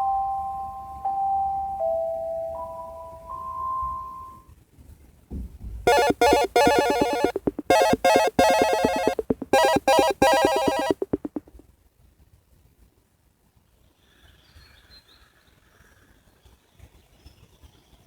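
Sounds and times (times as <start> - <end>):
phone alarm electronic pulsing: 5.9 - 11.6.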